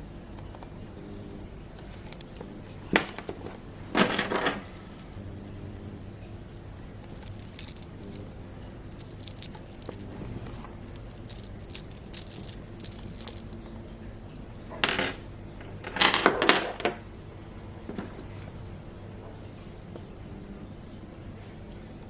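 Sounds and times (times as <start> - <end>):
packaging rustling: 1.8 - 4.5, 7.1 - 8.2, 9.0 - 13.6
light clicks and clinks: 8.9 - 10.1, 10.8 - 13.7.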